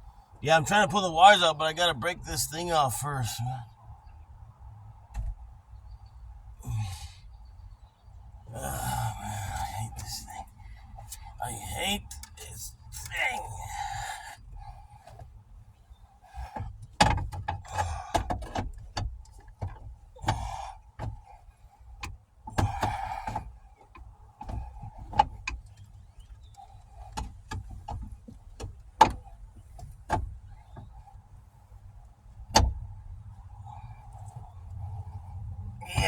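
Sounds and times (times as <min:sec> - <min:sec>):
sharp clicks and knocks: 0:16.4 - 0:21.3, 0:22.0 - 0:31.1, 0:32.3 - 0:33.0.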